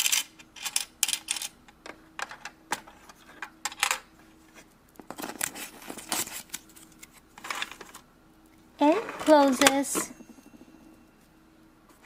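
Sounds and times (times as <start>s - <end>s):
toy coins clinking into drawer: 0.0s - 1.6s.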